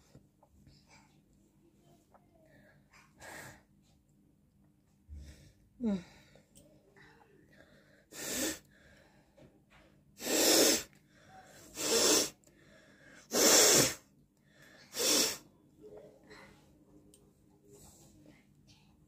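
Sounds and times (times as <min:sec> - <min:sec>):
person blowing air through nose: 0:08.1 - 0:08.6, 0:10.2 - 0:10.9, 0:11.7 - 0:12.4, 0:13.3 - 0:14.0, 0:14.9 - 0:15.4.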